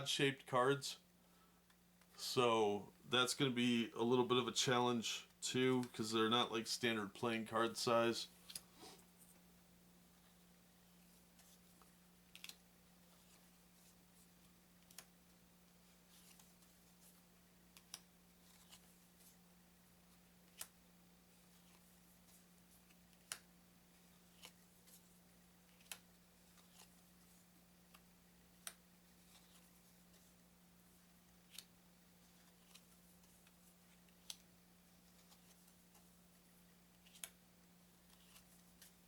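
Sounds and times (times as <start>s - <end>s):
playing cards clicking: 12.3s - 12.6s, 24.3s - 24.6s, 37.0s - 37.4s, 38.0s - 39.0s.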